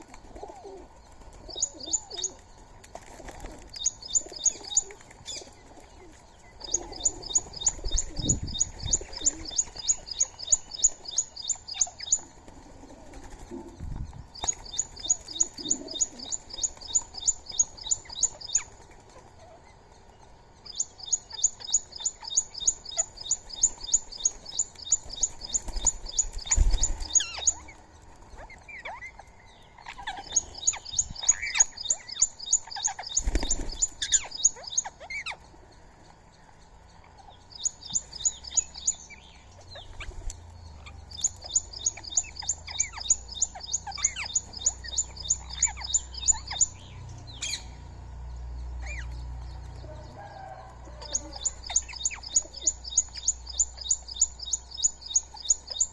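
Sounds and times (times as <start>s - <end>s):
lower bird calls: 0.0s - 55.9s
squirrel chip calls: 20.6s - 35.5s, 37.1s - 47.7s, 48.8s - 55.9s.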